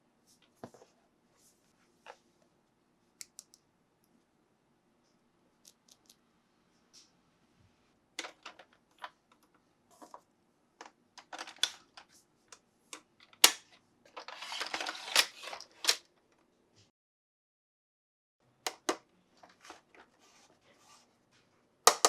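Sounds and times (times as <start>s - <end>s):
plastic toys clicking and tapping: 10.8s - 12.1s.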